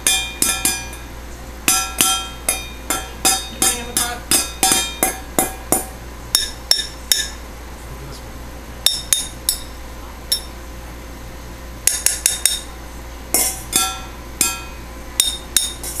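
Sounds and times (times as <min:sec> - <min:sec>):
baby banging on bowls and pot: 0:00.0 - 0:07.4, 0:11.8 - 0:12.7, 0:13.3 - 0:16.0.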